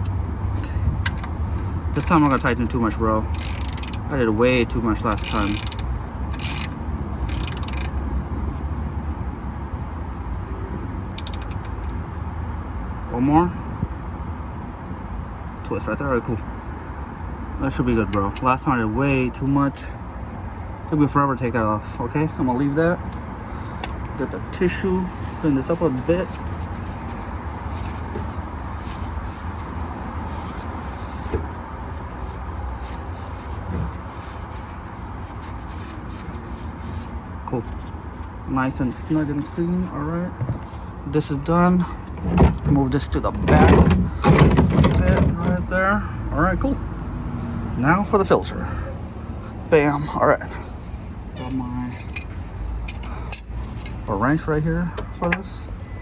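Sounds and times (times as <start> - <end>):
socket ratchet clicking: 2.0 - 2.6, 3.4 - 4.1, 5.1 - 8.0, 11.2 - 12.0, 23.8 - 24.1
paper tissue rubbing: 25.0 - 37.2.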